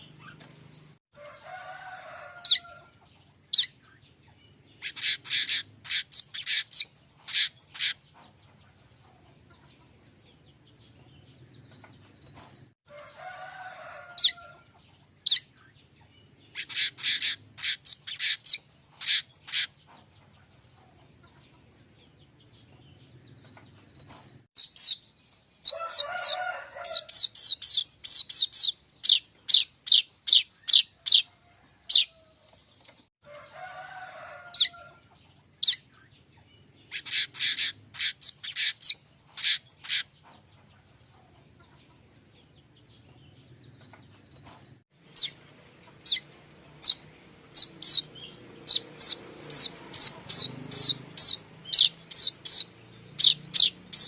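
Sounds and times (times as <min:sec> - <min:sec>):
bird ticking chirps: 0:16.5 - 0:19.7, 0:46.0 - 0:54.0.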